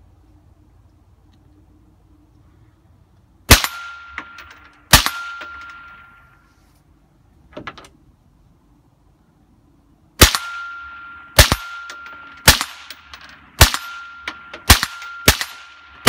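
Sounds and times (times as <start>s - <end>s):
rifle shots with echo: 3.5s - 6.0s, 10.2s - 16.0s
steady ringing tone: 3.6s - 6.5s, 10.3s - 16.0s.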